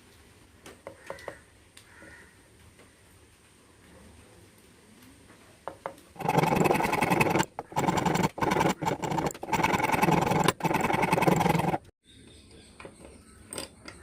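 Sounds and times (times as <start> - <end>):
tool rasping wood: 6.2 - 11.9.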